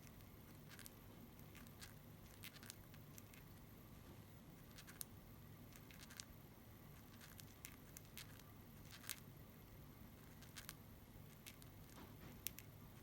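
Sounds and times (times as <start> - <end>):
budgerigars clicking and rustling: 0.0 - 3.6, 5.7 - 6.3, 7.0 - 9.3, 10.2 - 12.8
low room hum: 0.0 - 13.0.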